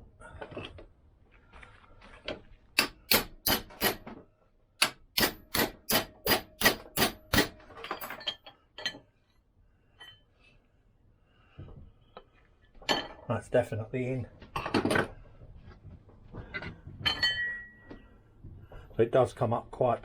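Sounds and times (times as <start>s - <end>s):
hammer tapping metal: 2.8s - 4.1s, 4.8s - 7.6s.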